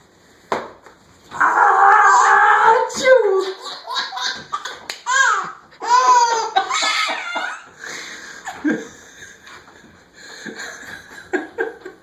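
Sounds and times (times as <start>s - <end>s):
baby laughing: 3.4s - 7.8s.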